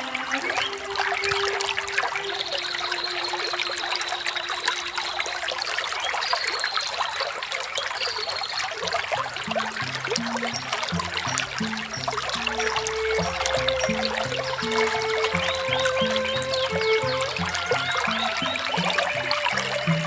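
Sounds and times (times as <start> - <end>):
small waterfall splashing: 0.0 - 20.0
soft background music: 9.3 - 20.0.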